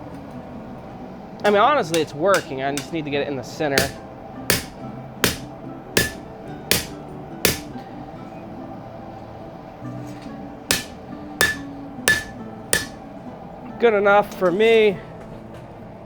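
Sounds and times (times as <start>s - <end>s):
hammer striking steel on anvil: 2.0s - 3.0s, 3.8s - 7.8s, 10.7s - 13.0s.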